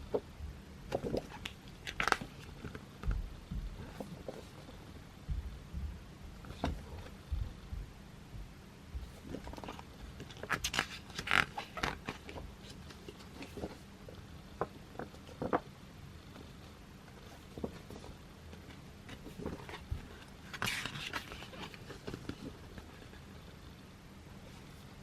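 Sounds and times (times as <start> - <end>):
pages turning and rustling: 0.9 - 3.2, 3.8 - 4.8, 6.4 - 7.2, 9.1 - 13.9, 14.6 - 15.7, 17.1 - 23.2.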